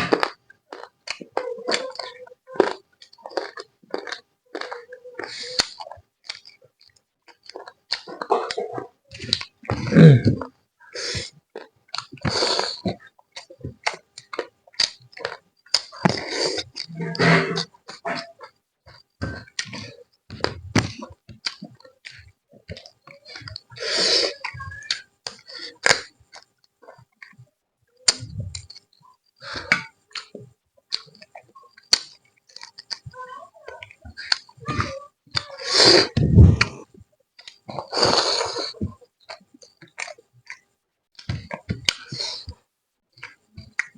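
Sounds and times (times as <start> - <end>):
chewing: 0.0 - 43.9
slurping: 15.2 - 18.4, 33.7 - 36.9
low throaty sound: 16.9 - 17.7.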